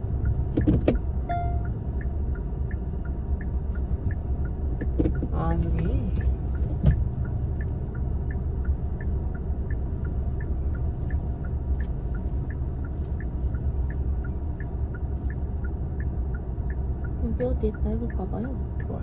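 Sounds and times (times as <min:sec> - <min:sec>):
car rumbling at low speed: 0:00.0 - 0:19.0
turn signal ticking: 0:00.0 - 0:19.0.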